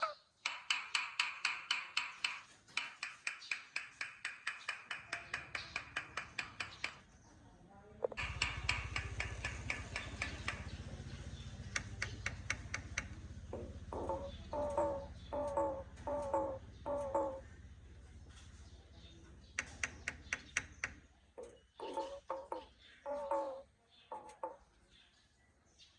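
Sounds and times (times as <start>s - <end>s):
myna sharp clicking notes: 8.1s - 11.0s, 11.6s - 13.3s.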